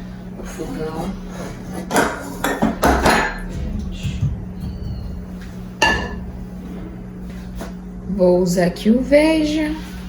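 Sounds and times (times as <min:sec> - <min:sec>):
steady low hum: 0:00.0 - 0:10.0
kitchenware clanking: 0:01.5 - 0:06.5.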